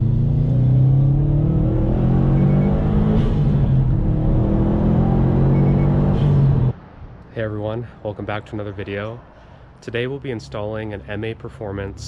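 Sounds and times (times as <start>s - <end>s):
car engine accelerating: 0.0s - 6.8s.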